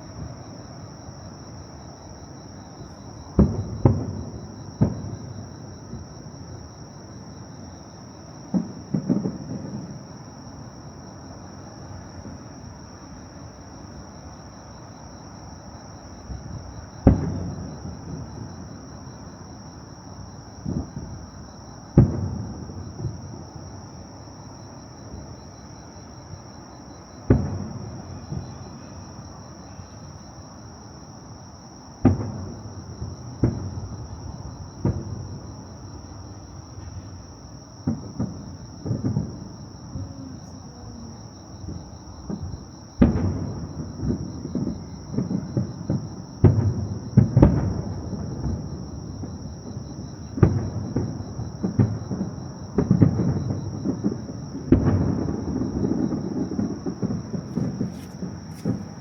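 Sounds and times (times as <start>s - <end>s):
fireworks bursting: 2.8s - 6.1s, 8.4s - 10.2s, 17.0s - 18.5s, 27.2s - 28.7s, 37.8s - 59.0s.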